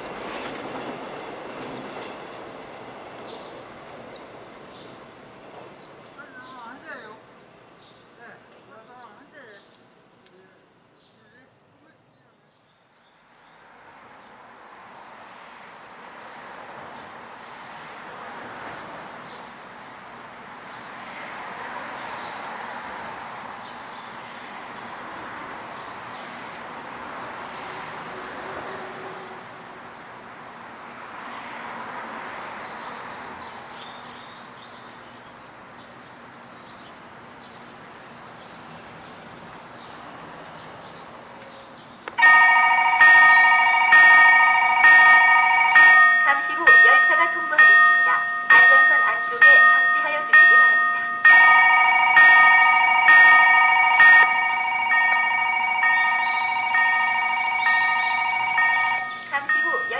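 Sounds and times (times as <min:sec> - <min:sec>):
road traffic passing: 0:00.0 - 0:11.5, 0:12.5 - 0:59.9
level crossing warning bell: 0:42.2 - 0:59.9.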